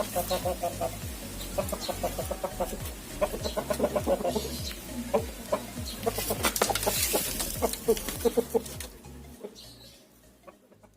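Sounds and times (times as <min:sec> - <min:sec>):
chickens clucking: 0:00.0 - 0:10.9.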